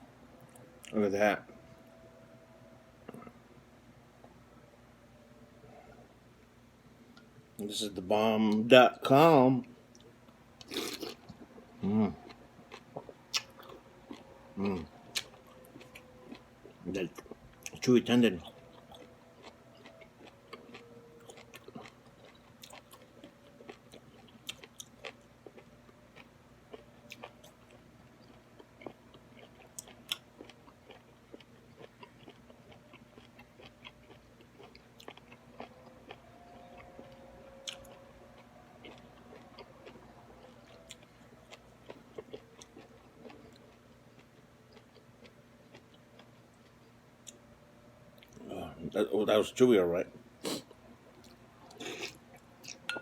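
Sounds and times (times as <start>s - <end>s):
chewing beef tendon: 12.2s - 47.4s.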